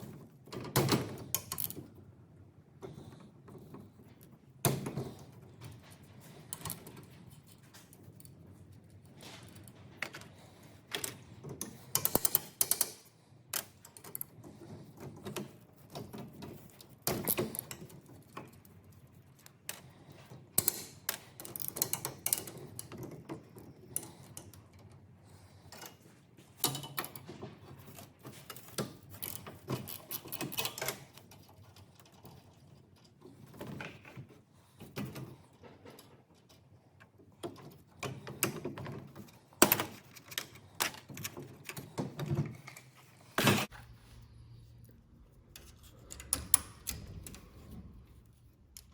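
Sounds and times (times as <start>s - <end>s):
tools and metal parts clanking: 25.7s - 43.8s.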